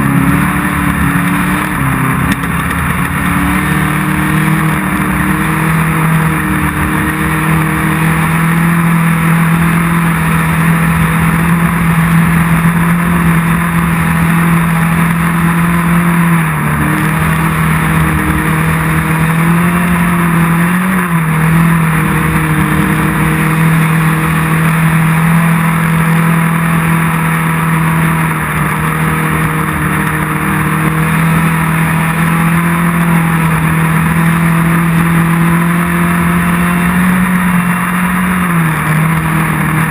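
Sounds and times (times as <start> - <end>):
race car engine running: 0.0 - 39.9.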